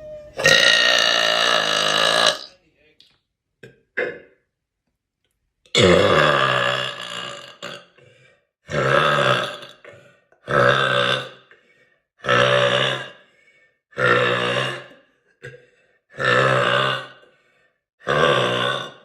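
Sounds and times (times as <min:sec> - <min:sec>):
woman belching loudly: 0:00.2 - 0:02.5, 0:04.0 - 0:04.4, 0:05.8 - 0:08.0, 0:08.7 - 0:09.8.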